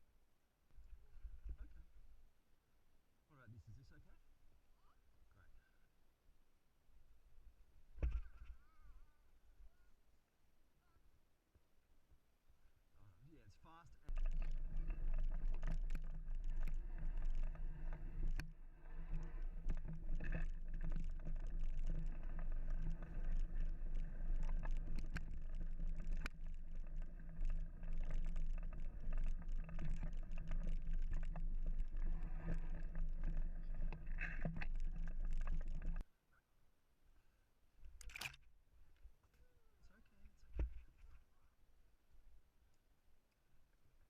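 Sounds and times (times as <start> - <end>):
bike rattling over bumps: 14.1 - 36.0
wind and tyres rumbling: 14.1 - 36.0.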